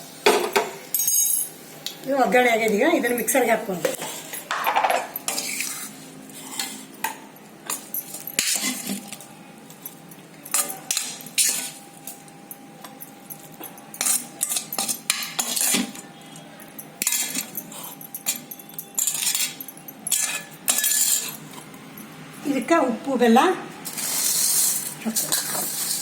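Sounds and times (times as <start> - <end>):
metal spoon scraping a pan: 5.2 - 6.9, 7.7 - 9.2, 10.5 - 11.8, 14.0 - 16.4, 17.0 - 21.7, 23.8 - 26.0.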